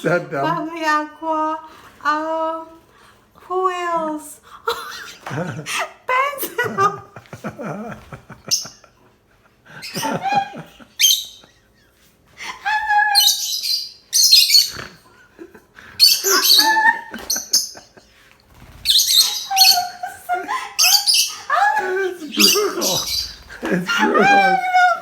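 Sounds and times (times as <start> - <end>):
pet birds chirping: 8.4 - 9.0, 9.7 - 11.8, 12.4 - 25.0.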